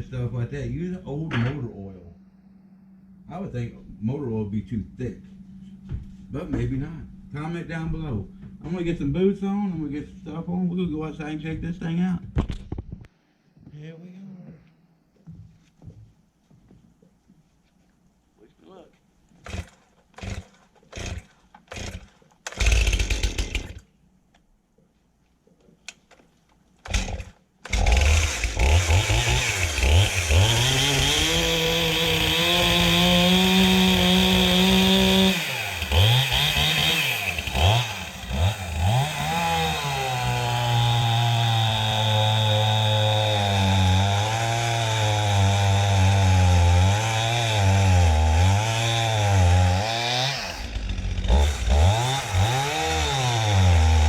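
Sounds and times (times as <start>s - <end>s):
chainsaw starting and revving: 19.4s - 23.9s, 26.8s - 54.0s.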